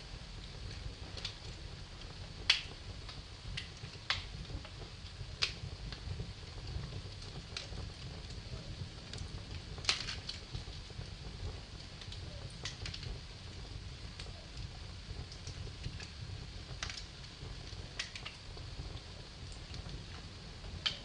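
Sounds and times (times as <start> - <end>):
low rumble of flames: 0.0 - 21.0
wood fire popping: 0.0 - 21.0.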